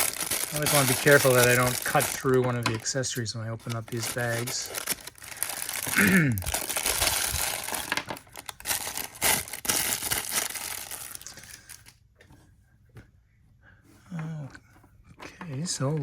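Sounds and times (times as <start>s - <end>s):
plastic bags crinkling: 0.0s - 11.9s.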